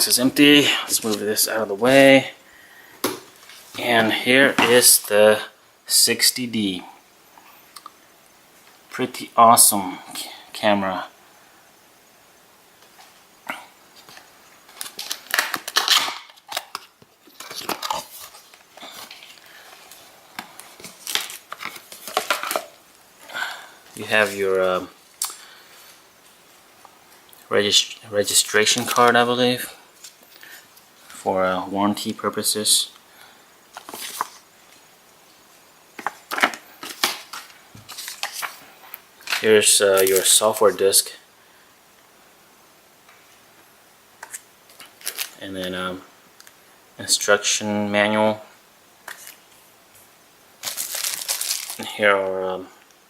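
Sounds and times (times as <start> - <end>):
plastic and paper crinkling: 14.0 - 22.9, 23.9 - 25.4, 33.7 - 34.8, 36.0 - 40.8, 44.2 - 45.4, 49.0 - 49.6, 50.6 - 52.0.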